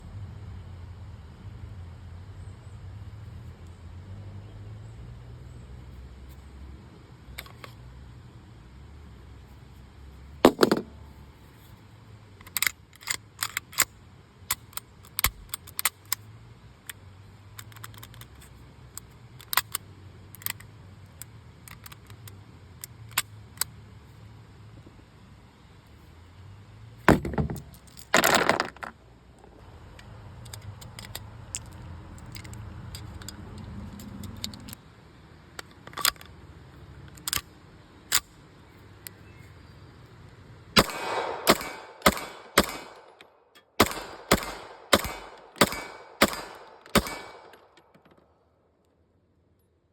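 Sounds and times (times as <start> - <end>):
pistol shots: 40.8 - 43.2, 43.8 - 47.7.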